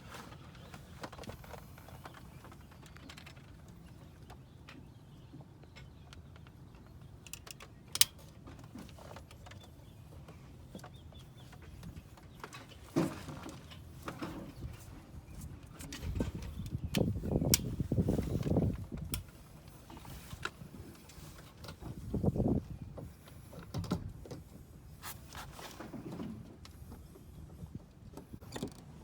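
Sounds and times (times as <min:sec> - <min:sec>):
clattering and rustling: 0:08.4 - 0:15.0.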